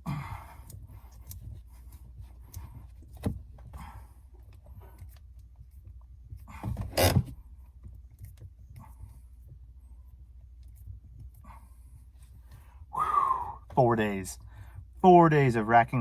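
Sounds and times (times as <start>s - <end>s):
shift knob clicks and creaks: 6.7s - 7.3s.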